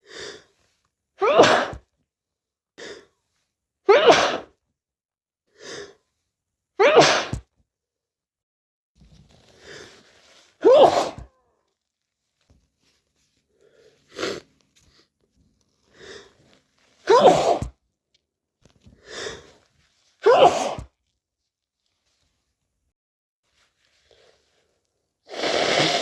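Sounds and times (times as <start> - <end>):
person sneezing: 1.2 - 1.8, 3.9 - 4.5, 6.8 - 7.4, 10.6 - 11.3, 17.0 - 17.7, 20.2 - 20.9, 25.3 - 26.0
quick noisy in-breath: 25.3 - 26.0.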